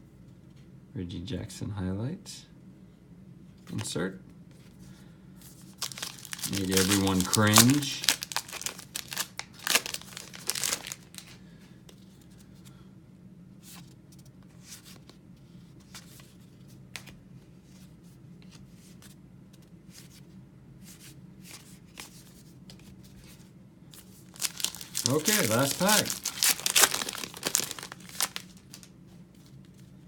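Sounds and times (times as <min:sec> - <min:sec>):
low steady hum: 0:00.0 - 0:30.0
cards being flipped through: 0:05.5 - 0:11.4, 0:24.0 - 0:29.9
wrapper crinkling: 0:05.7 - 0:11.4, 0:24.0 - 0:29.5.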